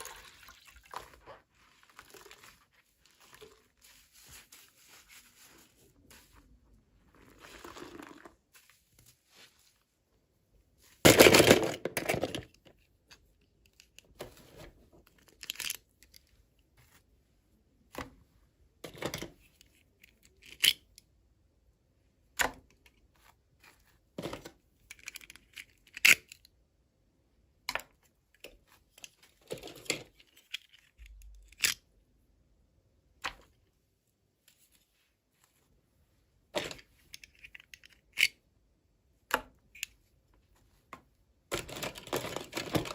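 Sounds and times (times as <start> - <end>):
clicks and rustles of handling: 27.7 - 31.8, 39.3 - 42.9.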